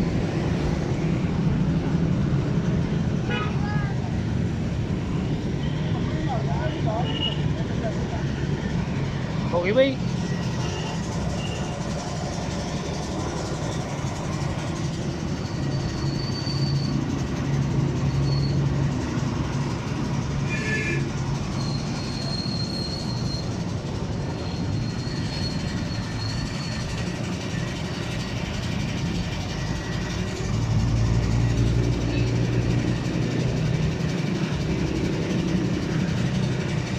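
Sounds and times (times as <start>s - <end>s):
high wheel squeal: 5.2s - 36.9s
train wagons rumbling: 21.1s - 36.9s.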